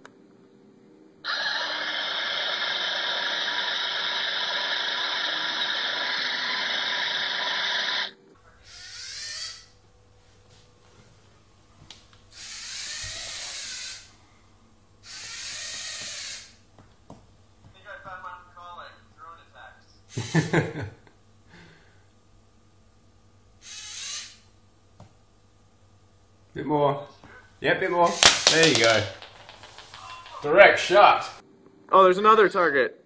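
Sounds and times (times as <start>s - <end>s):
robot servo motors whirring: 1.3s - 8.1s, 23.6s - 24.4s.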